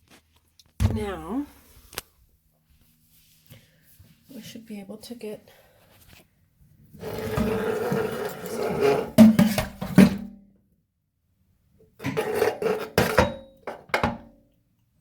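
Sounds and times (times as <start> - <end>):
rough scraping with knocks and clunks: 7.0 - 10.3, 12.0 - 13.9.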